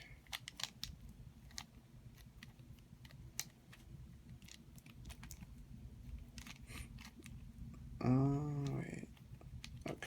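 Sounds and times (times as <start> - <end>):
plastic puzzle clicks: 0.2 - 5.5.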